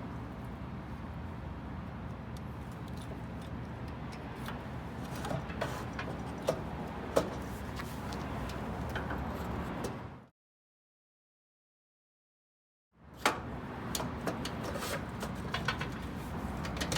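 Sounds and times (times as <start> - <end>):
clicks and knocks of parts: 13.2 - 16.9.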